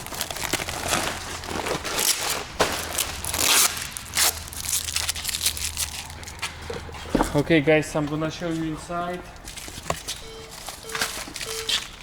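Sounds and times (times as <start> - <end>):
plastic bags crinkling: 0.0 - 6.4.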